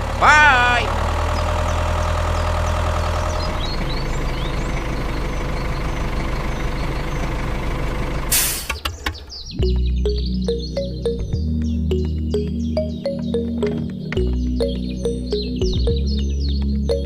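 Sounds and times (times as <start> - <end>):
tractor engine idling: 0.0 - 17.0
faint bird chirps: 1.3 - 7.4
short hiss: 8.3 - 8.8.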